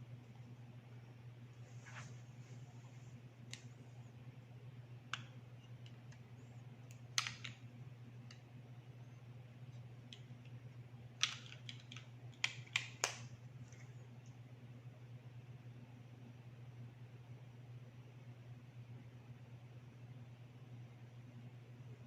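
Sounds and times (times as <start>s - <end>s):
faint low hum: 0.0s - 22.0s
small plastic clicks and taps: 6.9s - 7.6s, 11.2s - 13.8s.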